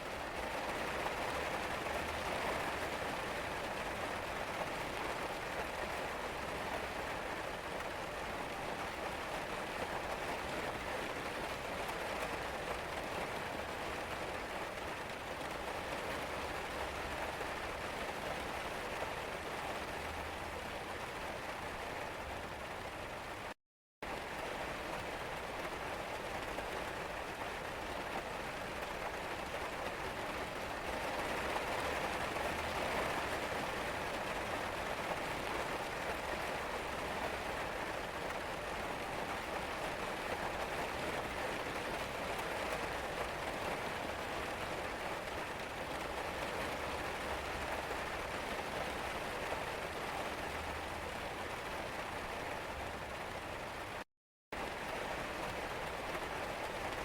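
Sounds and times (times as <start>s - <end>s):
rain falling and pattering: 0.0s - 57.0s.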